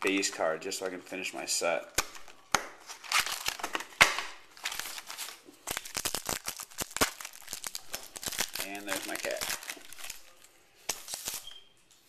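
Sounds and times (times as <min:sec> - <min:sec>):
wrapper crinkling and tearing: 0:02.0 - 0:11.6.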